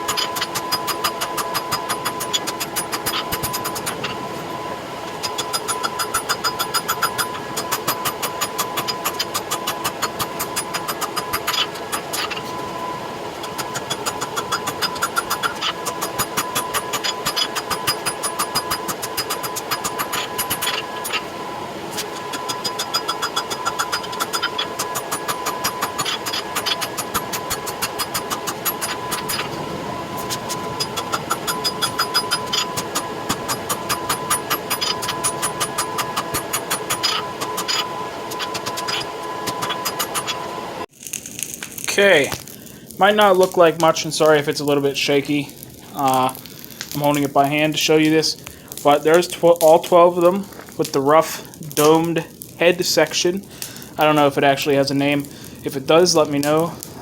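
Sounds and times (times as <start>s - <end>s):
power hammer striking steel: 0.0s - 40.8s
motor hum: 0.0s - 40.9s.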